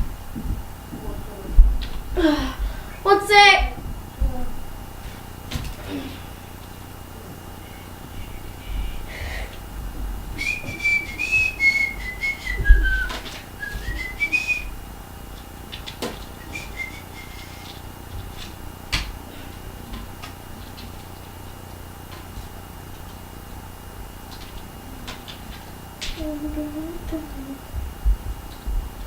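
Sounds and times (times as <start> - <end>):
person whistling a tune: 10.4 - 14.8, 16.4 - 17.8.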